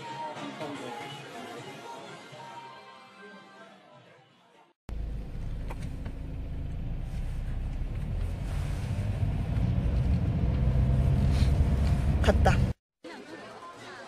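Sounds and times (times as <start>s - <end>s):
low steady rumble: 4.9s - 12.7s.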